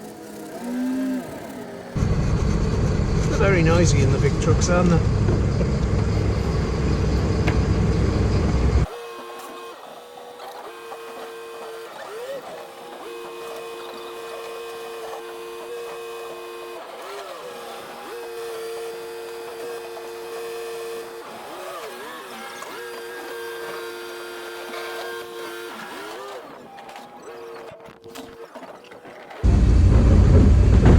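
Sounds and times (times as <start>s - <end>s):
two-note hum: 0.0s - 28.7s
refuse lorry engine running: 0.0s - 30.9s.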